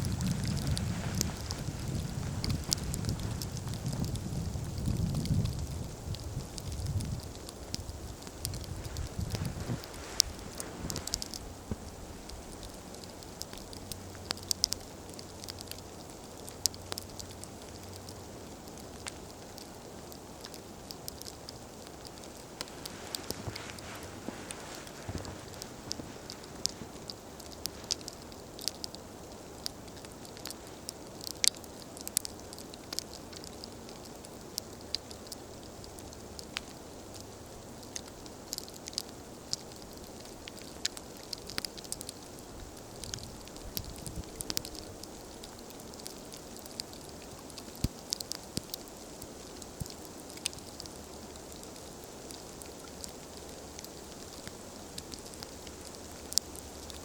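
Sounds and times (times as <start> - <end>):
low rush of flame: 0.0 - 14.2
campfire hissing: 0.0 - 57.0
fire crackles and pops: 0.0 - 57.0.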